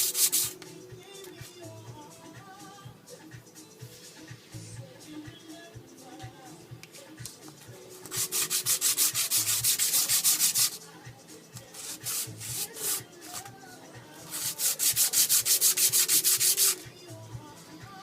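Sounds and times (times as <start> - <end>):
sandpaper rasping on metal: 0.0 - 0.6, 8.1 - 10.8, 11.7 - 13.5, 14.3 - 16.8.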